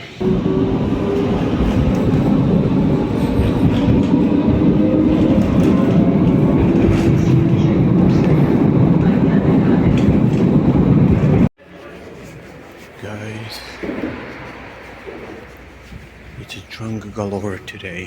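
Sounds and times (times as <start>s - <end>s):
tram wheels rumbling on track: 0.0s - 11.5s
low motor hum: 0.2s - 11.5s.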